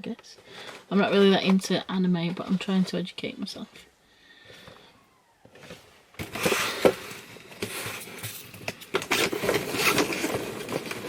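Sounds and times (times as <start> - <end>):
packaging rustling: 4.8 - 11.0.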